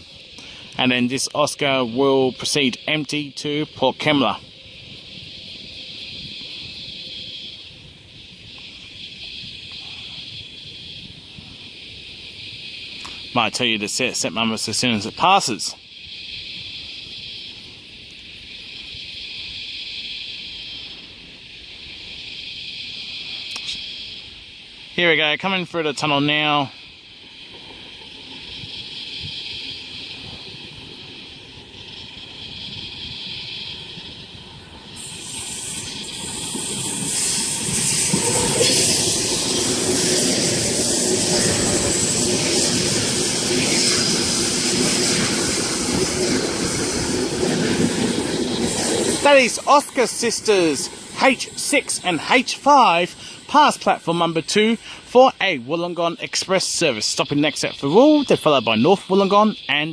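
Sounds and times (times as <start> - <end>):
high-pitched insect chorus: 0.0 - 59.9
wind rumble on microphone: 4.3 - 13.3, 27.5 - 49.3
train wheels rushing on rail: 25.7 - 56.8.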